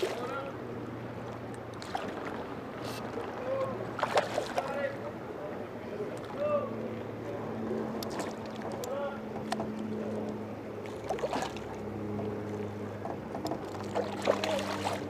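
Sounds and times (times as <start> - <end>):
boat motor humming: 0.0 - 15.0
light clicks and knocks: 13.0 - 14.0.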